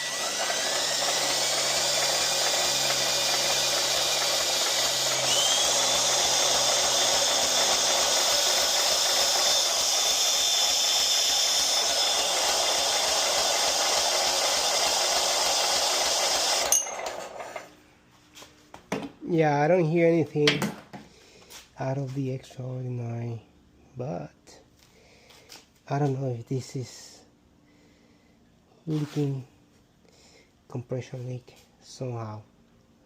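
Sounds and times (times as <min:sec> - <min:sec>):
electric starter motor whirring: 0:00.0 - 0:17.7.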